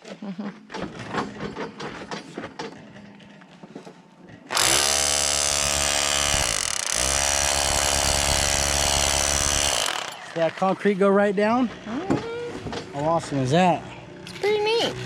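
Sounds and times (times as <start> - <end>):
power drill whining: 4.5 - 10.3.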